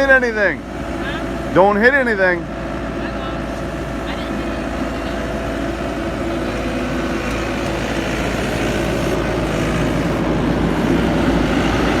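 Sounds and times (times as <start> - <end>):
skid steer engine running: 0.0 - 12.0.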